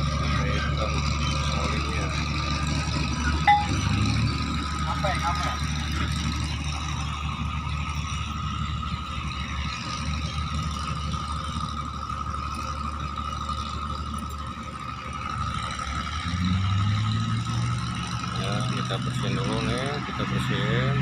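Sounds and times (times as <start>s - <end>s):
engine running: 0.0s - 21.0s.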